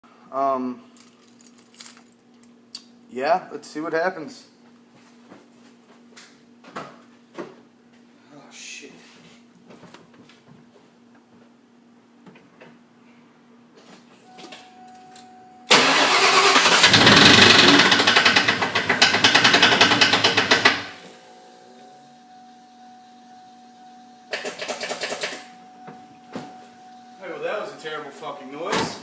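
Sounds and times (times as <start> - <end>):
harsh clattering vehicle engine: 15.7 - 21.0.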